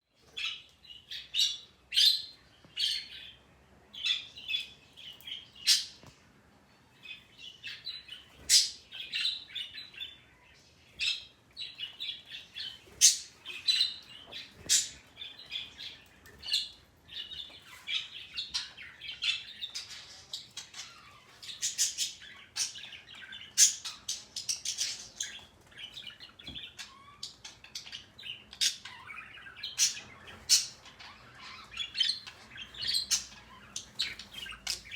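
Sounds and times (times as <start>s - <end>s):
parrot chirps and squawks: 17.6s - 25.4s, 26.7s - 34.9s.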